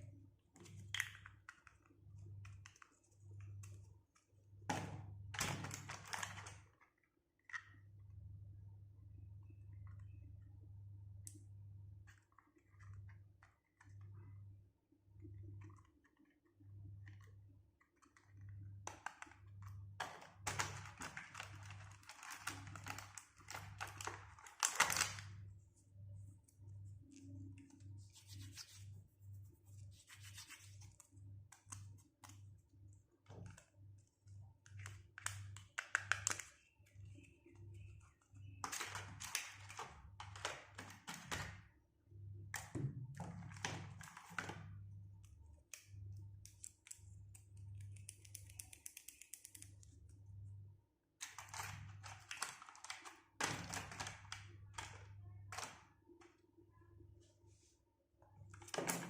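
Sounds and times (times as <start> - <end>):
plastic packaging crinkling and tearing: 20.5 - 25.3.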